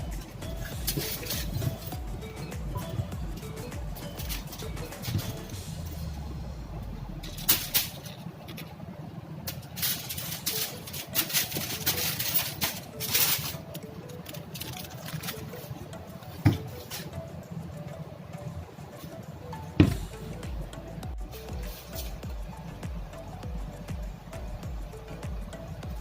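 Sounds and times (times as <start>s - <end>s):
kitchen handling clicks and knocks: 16.3s - 17.2s, 19.8s - 20.1s.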